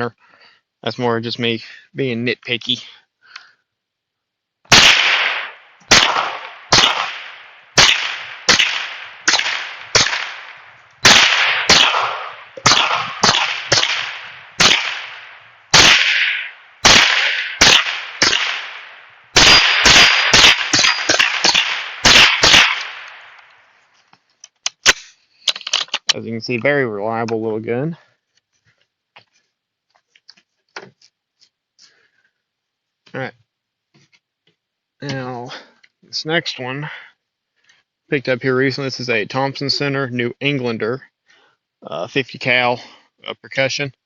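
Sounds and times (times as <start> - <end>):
rifle shots with echo: 4.7 - 23.4.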